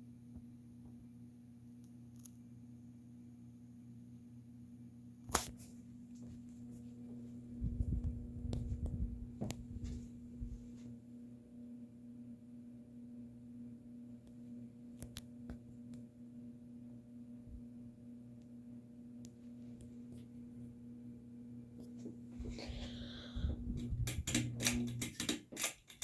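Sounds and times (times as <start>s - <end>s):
ceiling fan motor humming: 0.0s - 26.0s
low rumble: 7.6s - 10.5s, 22.4s - 24.9s.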